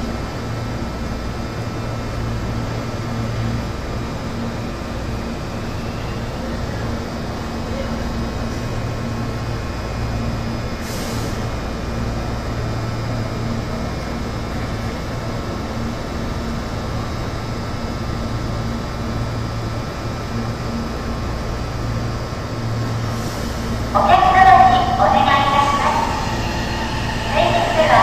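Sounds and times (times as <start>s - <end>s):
air brake hiss: 10.8s - 11.4s, 23.1s - 23.8s
electric train humming: 11.4s - 28.0s.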